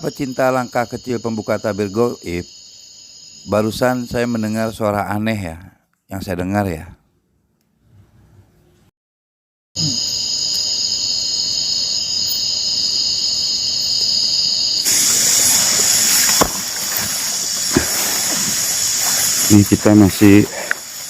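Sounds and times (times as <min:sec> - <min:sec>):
cicadas buzzing: 0:00.0 - 0:04.4, 0:09.8 - 0:21.0.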